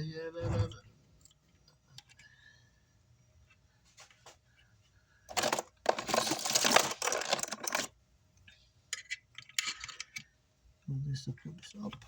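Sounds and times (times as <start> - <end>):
packaging crinkling: 5.3 - 7.9.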